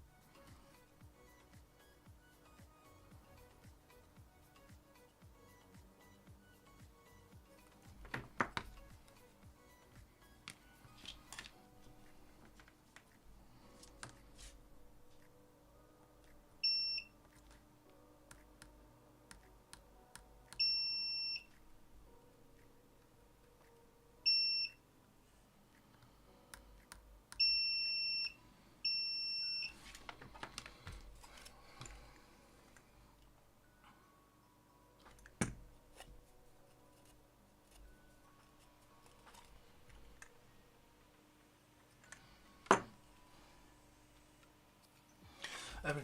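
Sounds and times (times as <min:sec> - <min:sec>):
multimeter beeps: 0:16.6 - 0:17.2, 0:20.5 - 0:21.6, 0:24.2 - 0:24.8, 0:27.3 - 0:29.8.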